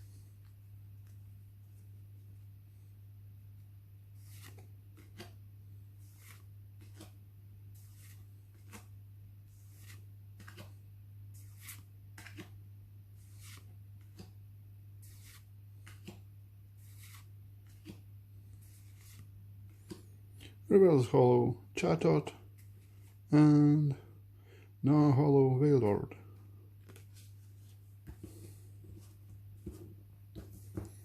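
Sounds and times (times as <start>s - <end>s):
cards sliding with swishes and clicks: 4.1s - 14.4s, 15.0s - 20.6s, 26.8s - 31.0s.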